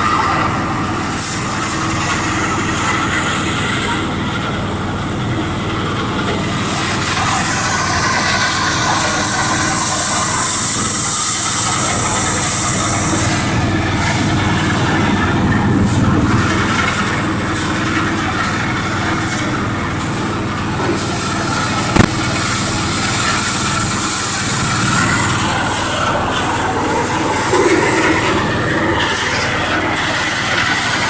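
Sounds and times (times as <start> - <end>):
rice milling machine droning: 0.0 - 31.0
sharp knock: 21.9 - 22.2.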